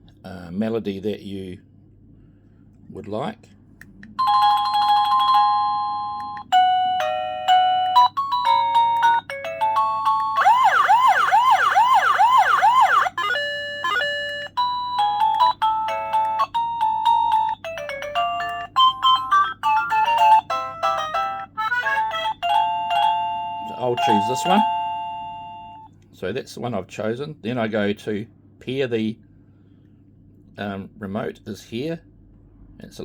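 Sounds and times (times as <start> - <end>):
rising siren-like warble: 10.4 - 14.2
pager beeping electronic melodies: 13.2 - 25.9.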